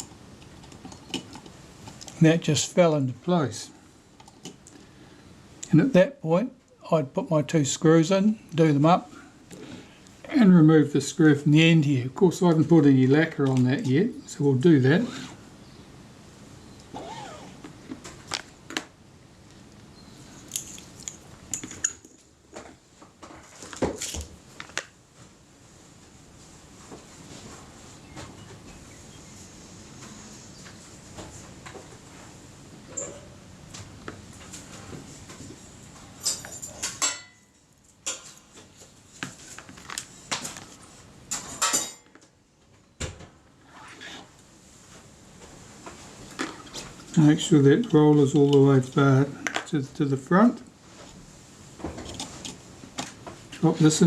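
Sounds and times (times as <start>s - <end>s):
small metal tools clinking: 36.2s - 37.4s.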